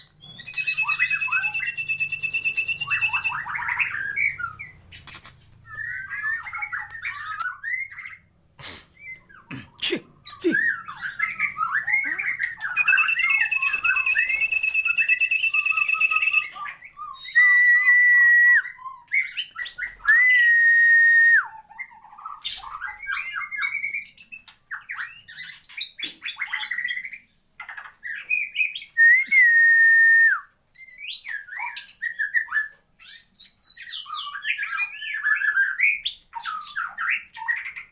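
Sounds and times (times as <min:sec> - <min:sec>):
songbird singing varied song: 0:00.0 - 0:08.2, 0:10.4 - 0:18.0.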